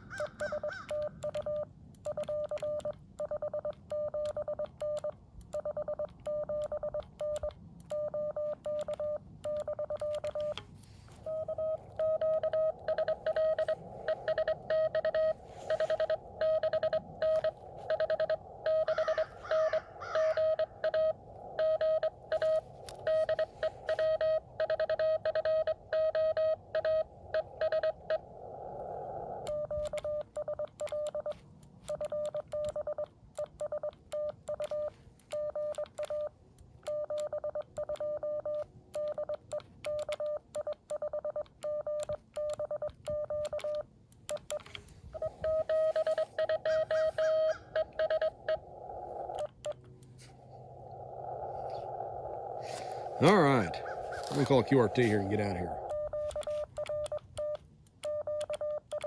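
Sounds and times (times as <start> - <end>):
morse code tones: 0.0 - 59.0
radio band hiss: 12.9 - 24.2, 50.2 - 56.6.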